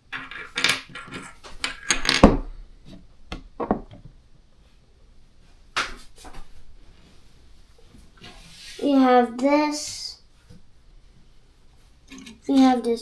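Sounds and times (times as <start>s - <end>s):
plastic toy bricks clicking: 0.2s - 2.5s.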